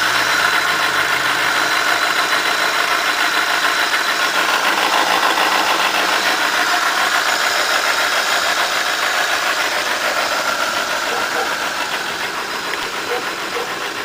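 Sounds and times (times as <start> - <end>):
car engine running: 0.0 - 14.0
fast engine ticking: 0.0 - 14.0.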